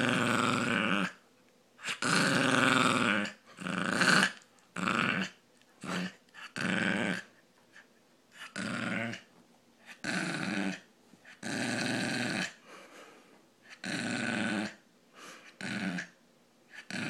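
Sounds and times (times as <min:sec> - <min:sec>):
dog grunting: 0:01.8 - 0:07.3, 0:08.3 - 0:12.6, 0:15.4 - 0:17.0.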